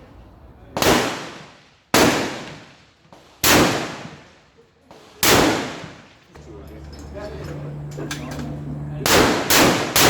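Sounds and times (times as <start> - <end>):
rifle shots with echo: 0.8 - 6.2, 9.0 - 10.0.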